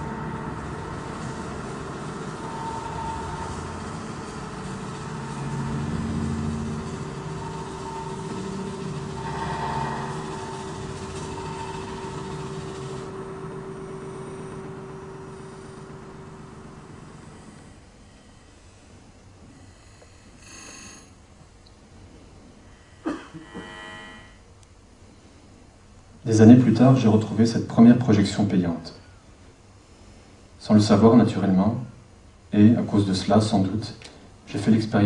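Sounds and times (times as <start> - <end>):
low engine-like rumble: 0.0 - 18.4.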